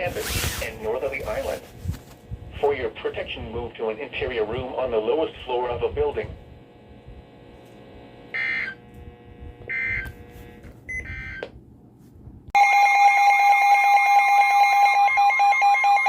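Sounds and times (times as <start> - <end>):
loud continuous alert tone: 8.3 - 9.0.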